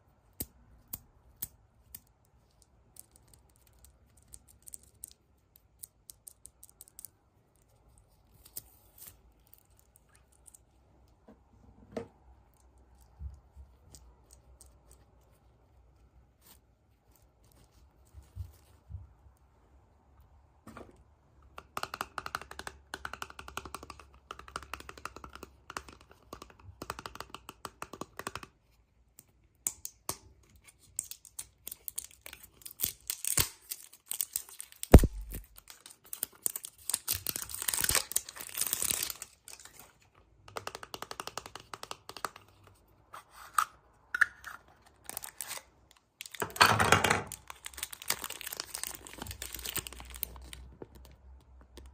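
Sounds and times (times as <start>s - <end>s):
plastic packaging crinkling: 31.7s - 40.0s, 47.3s - 51.2s.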